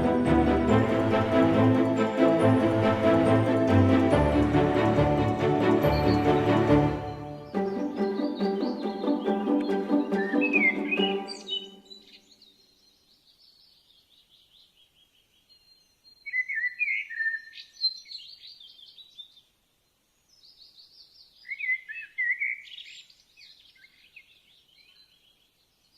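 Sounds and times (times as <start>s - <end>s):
songbirds singing: 4.8s - 25.9s.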